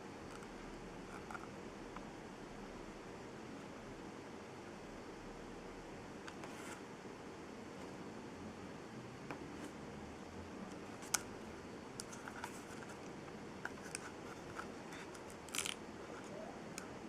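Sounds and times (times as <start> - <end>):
faint room hiss: 0.0 - 17.0
packaging crinkle: 13.8 - 15.8.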